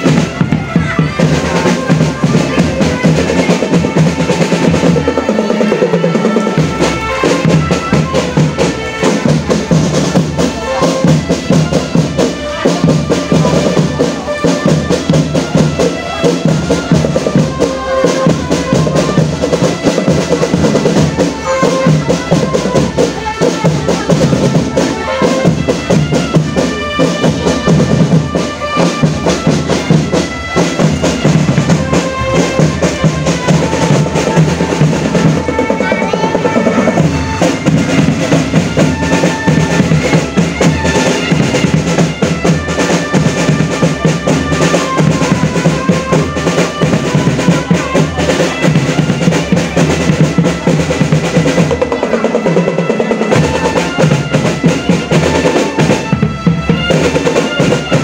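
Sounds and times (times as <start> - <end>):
snare and bass drums beating: 0.0 - 58.0
sustained melody line: 17.0 - 43.7.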